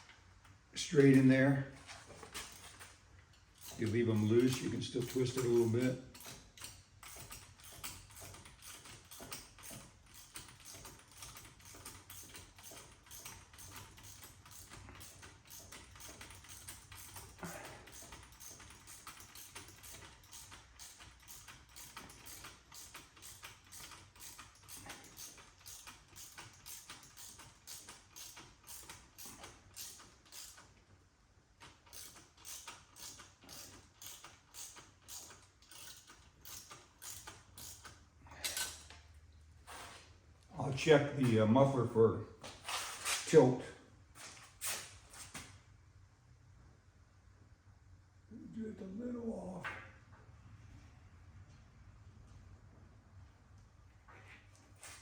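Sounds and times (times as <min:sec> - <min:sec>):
ratchet wrench clicking: 0:02.2 - 0:30.8, 0:31.6 - 0:39.0.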